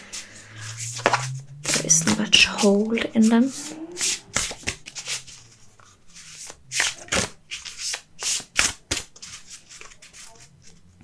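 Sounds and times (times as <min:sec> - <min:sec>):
cards being shuffled: 0:03.5 - 0:10.9.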